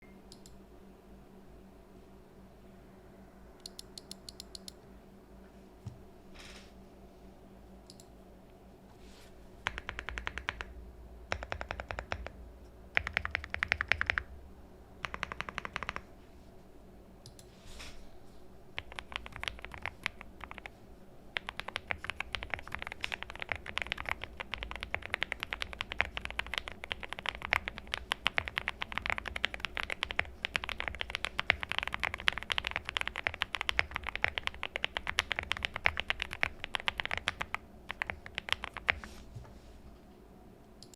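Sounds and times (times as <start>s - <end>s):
mechanical keyboard typing: 9.6s - 10.7s, 11.3s - 12.3s, 13.0s - 14.3s, 15.0s - 16.0s, 18.8s - 20.7s, 21.4s - 39.1s.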